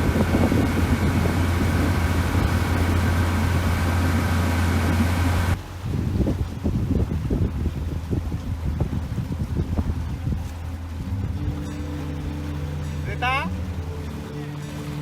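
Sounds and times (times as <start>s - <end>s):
boat engine humming: 0.0s - 15.0s
wind gusting on microphone: 0.0s - 15.0s
steady tones: 10.6s - 15.0s.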